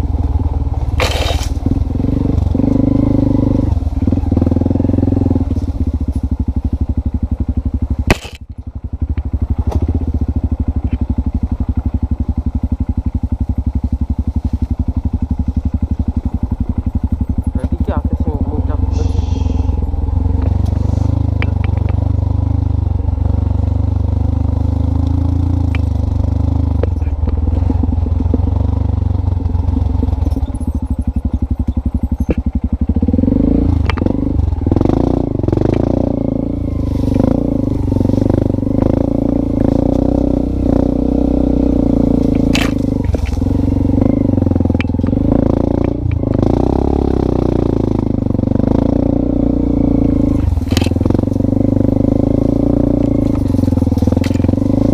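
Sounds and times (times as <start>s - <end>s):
motorcycle engine running: 0.0s - 54.9s
sharp knocks and rattles: 21.4s - 22.1s, 29.5s - 32.8s.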